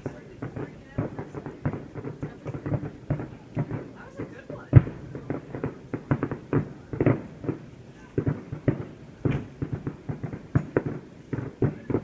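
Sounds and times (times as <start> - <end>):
fireworks bangs and pops: 0.0 - 12.0.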